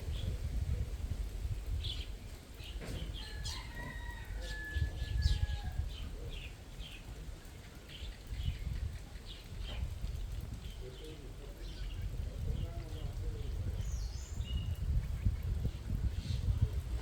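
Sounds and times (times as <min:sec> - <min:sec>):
rooster crowing: 0:03.2 - 0:05.8
birds chirping: 0:10.6 - 0:16.8.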